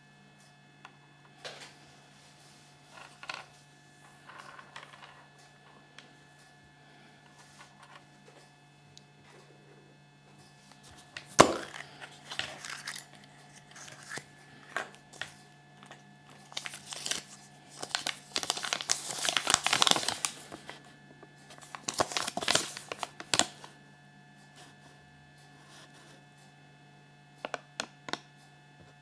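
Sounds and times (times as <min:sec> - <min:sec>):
wrapper tearing and crumpling: 0:11.3 - 0:20.8, 0:21.5 - 0:23.6.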